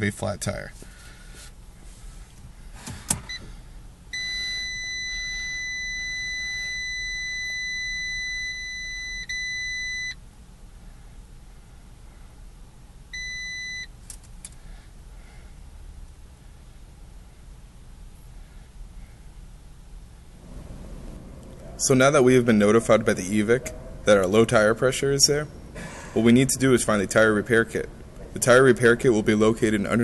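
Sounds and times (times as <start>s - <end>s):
dashboard warning beeps: 3.2s - 10.2s, 13.1s - 14.0s.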